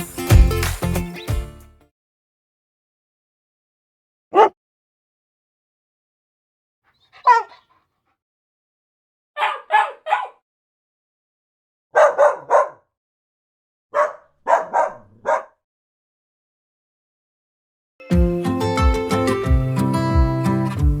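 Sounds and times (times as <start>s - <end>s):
dog barking: 4.3s - 4.6s, 7.0s - 7.8s, 9.4s - 10.4s, 11.9s - 12.9s, 13.9s - 15.6s.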